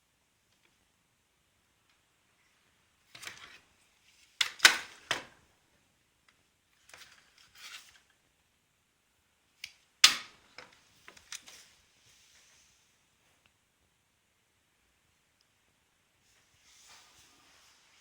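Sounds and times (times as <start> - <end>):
soft rustling: 10.8 - 13.7, 15.2 - 18.0.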